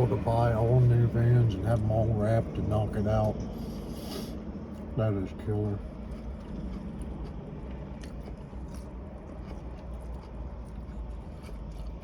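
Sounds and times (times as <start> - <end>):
steady low hum: 0.0 - 12.0
person chewing food: 3.3 - 5.0, 5.8 - 12.0.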